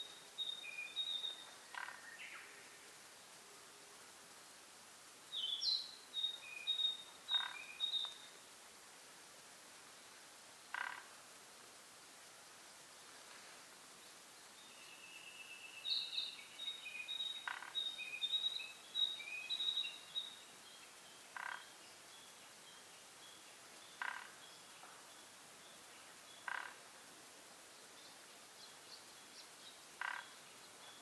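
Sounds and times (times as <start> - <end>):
bird twittering song: 0.0 - 2.6, 5.3 - 8.3, 14.4 - 26.6.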